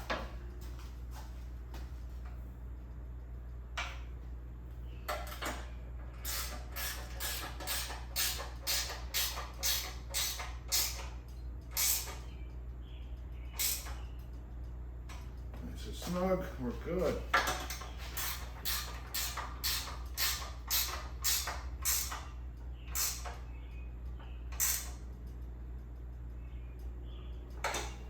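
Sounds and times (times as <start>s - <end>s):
steady low hum: 0.0s - 28.0s
fasteners tightened by hand: 5.1s - 12.2s, 13.6s - 14.0s, 17.3s - 22.3s, 22.9s - 23.4s, 24.5s - 25.0s.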